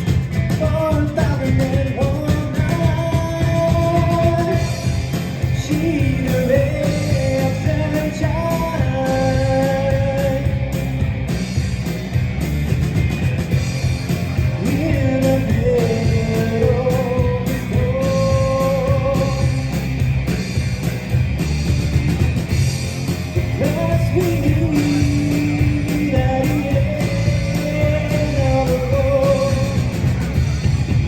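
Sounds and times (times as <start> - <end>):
man singing: 0.0 - 10.7, 14.5 - 19.7, 23.5 - 30.5
bass guitar: 0.0 - 31.0
drum kit: 0.0 - 31.0
electric guitar: 0.0 - 31.0.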